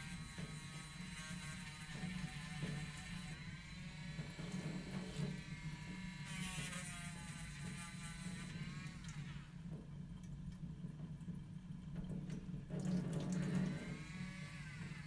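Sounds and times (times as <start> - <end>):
small electric motor whirring: 0.0 - 9.6, 13.5 - 15.0.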